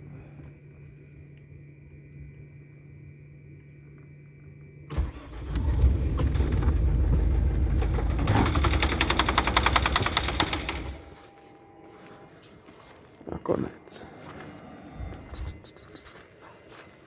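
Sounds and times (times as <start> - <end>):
diesel engine starting: 4.9 - 11.1
engine running with rapid knock: 4.9 - 11.1.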